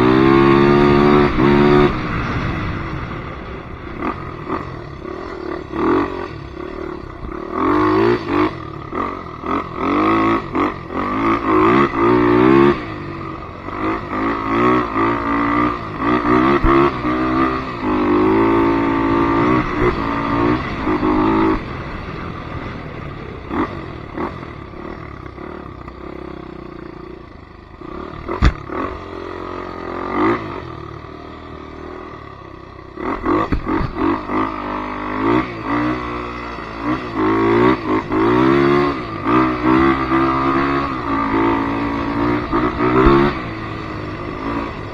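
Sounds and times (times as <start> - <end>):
atv engine revving: 0.0 - 44.9
sharp knock: 28.3 - 28.7.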